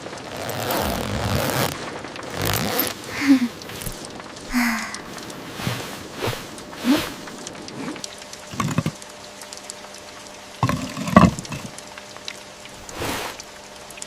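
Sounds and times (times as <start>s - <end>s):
rain patter: 0.0s - 14.0s
rustles and soft thumps: 5.2s - 8.0s, 8.6s - 9.0s, 10.6s - 11.7s.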